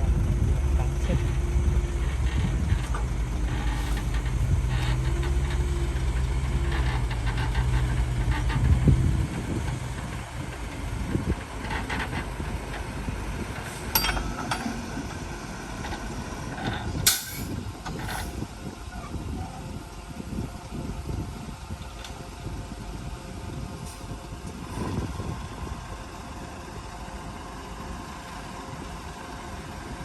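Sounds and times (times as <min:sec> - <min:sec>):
diesel engine of earthmoving machine: 0:00.0 - 0:30.0
knocks and scraping: 0:02.1 - 0:08.7.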